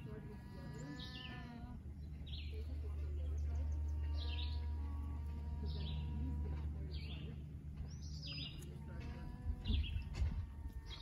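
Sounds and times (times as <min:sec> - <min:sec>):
faint steady hum: 0:00.0 - 0:11.0
bird chirping: 0:00.6 - 0:08.8.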